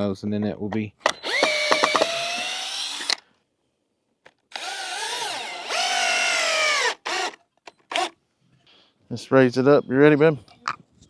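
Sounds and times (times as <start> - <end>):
power drill driving screws: 1.1 - 3.2, 4.5 - 8.2.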